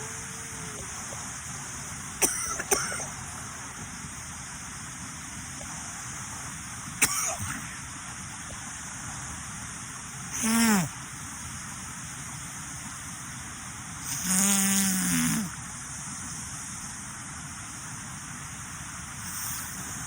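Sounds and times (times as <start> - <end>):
woman sneezing: 10.4 - 10.9.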